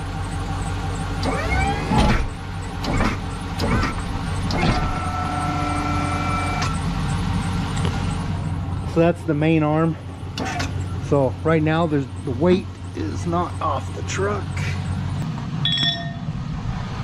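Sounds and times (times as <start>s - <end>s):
engine knocks: 0.0s - 5.4s
truck engine idling: 0.0s - 17.0s
electric pump whining: 1.2s - 6.8s.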